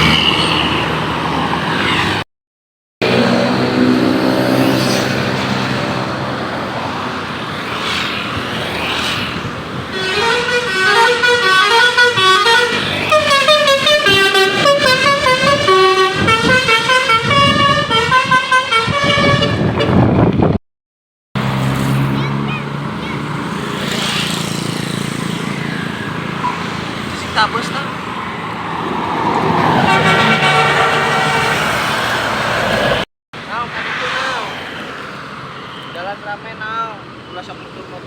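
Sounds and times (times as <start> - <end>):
traffic noise: 0.0 - 2.2, 3.0 - 20.6, 21.4 - 38.0
musical air horn tune: 9.9 - 20.0, 29.7 - 31.8.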